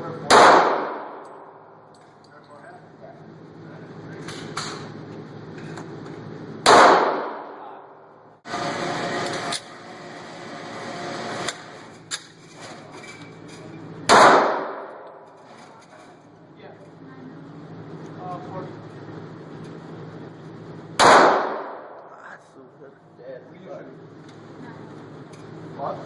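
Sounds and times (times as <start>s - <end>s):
pistol shots with echo: 0.3s - 1.6s, 6.7s - 7.6s, 14.1s - 15.0s, 21.0s - 22.0s.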